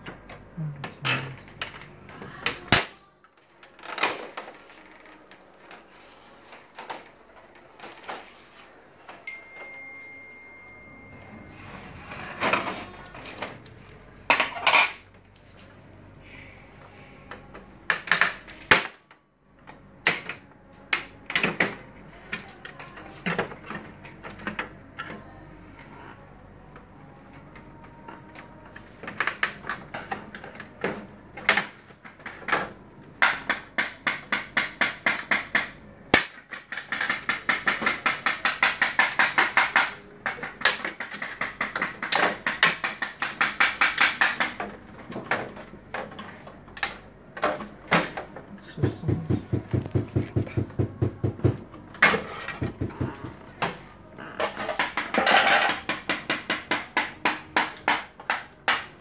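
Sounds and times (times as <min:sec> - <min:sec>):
tools knocking on plastic parts: 0:28.8 - 0:53.8, 0:54.4 - 0:59.0.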